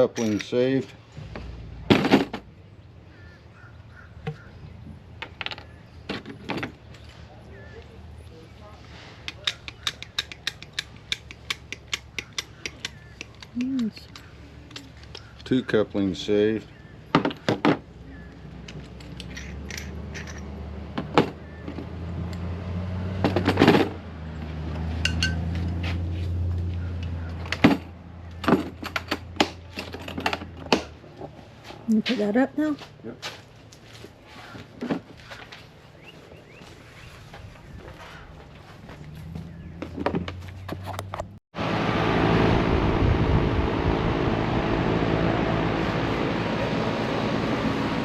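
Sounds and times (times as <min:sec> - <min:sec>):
metal tools clinking: 0:00.0 - 0:01.0, 0:18.6 - 0:20.6, 0:25.0 - 0:25.8
crow cawing: 0:03.1 - 0:04.6
low machine hum: 0:41.6 - 0:48.0.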